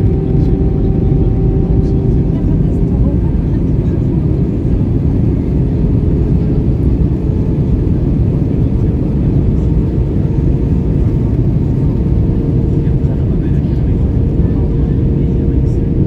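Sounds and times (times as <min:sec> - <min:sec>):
airliner low roar: 0:00.0 - 0:16.0
constant hum: 0:00.0 - 0:16.0.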